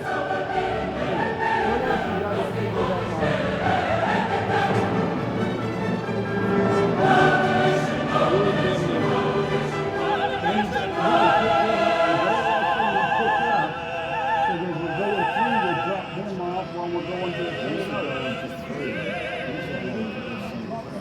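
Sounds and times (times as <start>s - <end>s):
orchestra playing: 0.0s - 16.3s
opera singers with vibrato: 0.0s - 20.9s.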